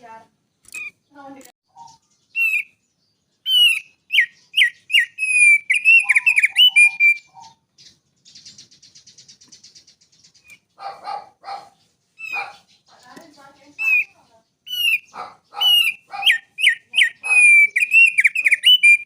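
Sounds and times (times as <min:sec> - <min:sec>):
bird whistling song: 0:01.7 - 0:10.8, 0:12.2 - 0:19.0
bird buzzy trill: 0:03.5 - 0:07.5, 0:13.8 - 0:19.0.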